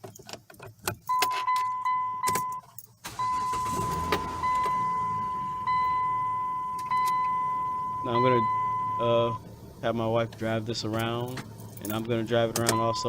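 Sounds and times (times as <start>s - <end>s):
car engine cranking and running: 0.0s - 13.0s
warning chime: 3.2s - 9.4s, 12.6s - 13.0s.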